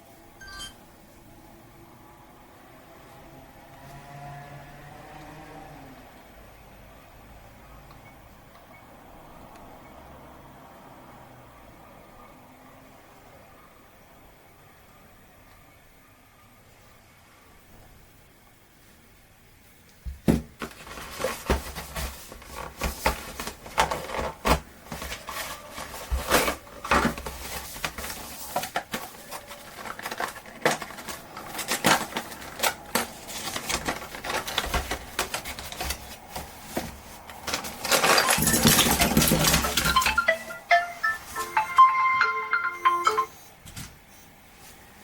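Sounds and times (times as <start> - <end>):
small hard objects clinking: 37.5 - 43.3.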